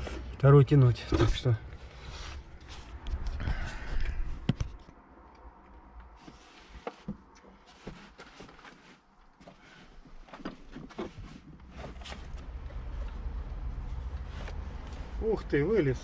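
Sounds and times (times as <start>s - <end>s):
rumbling handling noise: 0.0s - 15.2s.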